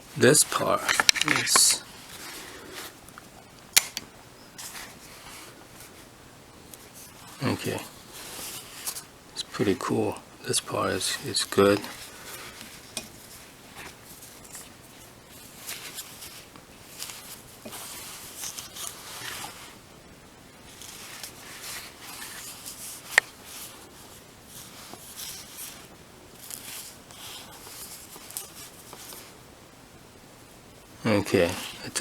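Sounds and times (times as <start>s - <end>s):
fabric bag rustling: 0.0s - 3.1s, 10.9s - 19.8s, 20.6s - 29.4s.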